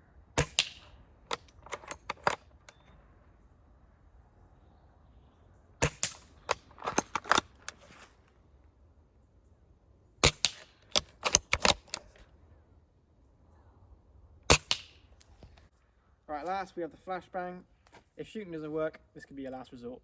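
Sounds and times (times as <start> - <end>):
airsoft gun snaps: 0.4 - 1.4, 5.8 - 7.4, 10.2 - 12.1, 14.5 - 15.3.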